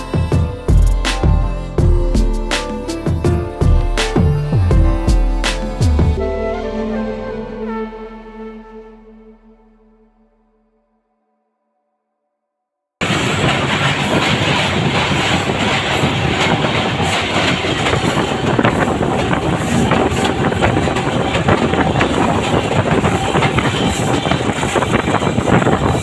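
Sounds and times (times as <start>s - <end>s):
train clicking and clattering: 13.0s - 26.0s
train wheels rumbling on rails: 13.0s - 26.0s.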